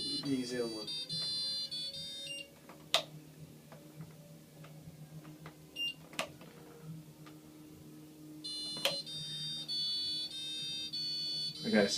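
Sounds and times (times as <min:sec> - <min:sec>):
washing machine beeper tune: 0:00.0 - 0:02.5, 0:08.4 - 0:11.9.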